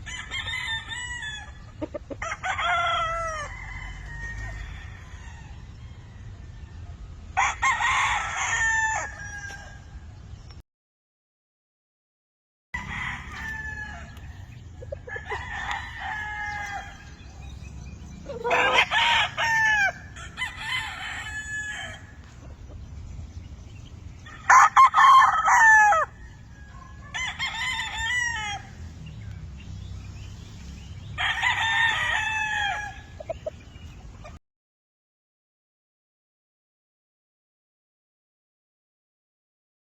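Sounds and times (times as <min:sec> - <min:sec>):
roosters crowing: 0:00.0 - 0:10.2, 0:12.8 - 0:34.4.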